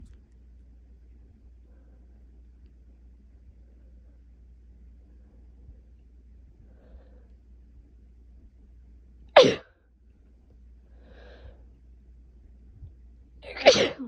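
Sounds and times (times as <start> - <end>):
woman sneezing loudly: 9.4 - 9.6, 13.5 - 14.0.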